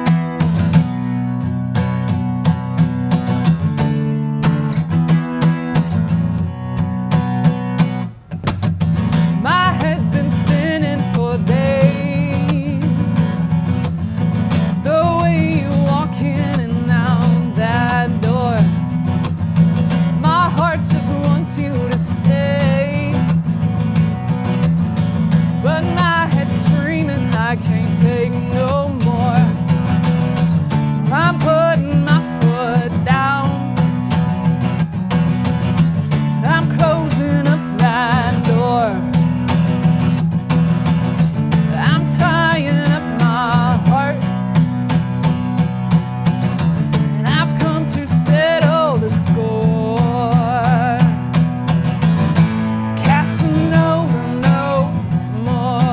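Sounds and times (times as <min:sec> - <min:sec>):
strummed acoustic guitar: 0:00.0 - 0:55.9
woman singing with vibrato: 0:09.2 - 0:19.3, 0:19.9 - 0:23.7, 0:25.4 - 0:34.5, 0:36.1 - 0:39.8, 0:41.3 - 0:45.2, 0:46.9 - 0:51.6, 0:52.6 - 0:55.9.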